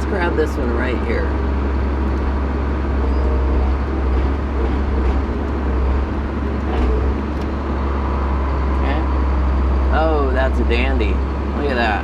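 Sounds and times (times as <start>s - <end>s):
machine engine low drone: 0.0s - 12.0s.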